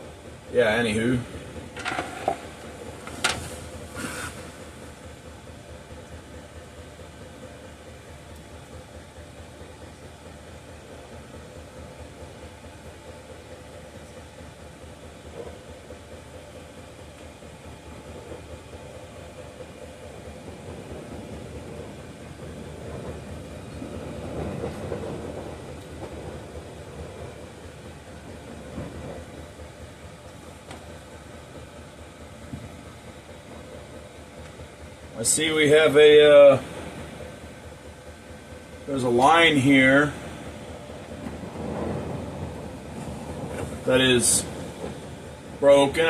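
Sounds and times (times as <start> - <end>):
steady mechanical hum: 0.0 - 46.0.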